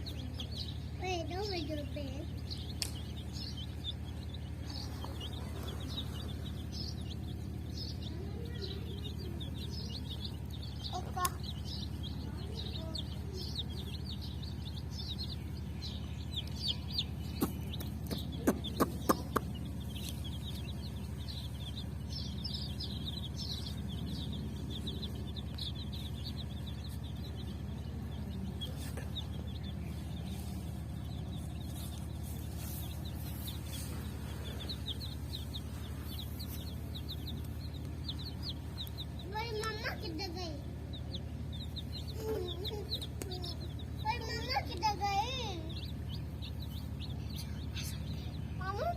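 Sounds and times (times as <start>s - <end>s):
baby chicks peeping: 0.0s - 48.9s
sharp taps: 17.3s - 20.2s.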